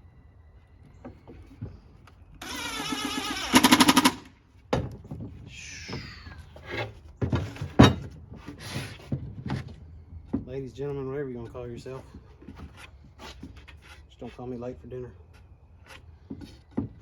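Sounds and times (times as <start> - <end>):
wood and tools knocking: 0.8 - 10.8, 11.4 - 14.4, 15.3 - 17.0
power drill driving screw into plywood: 2.4 - 4.3.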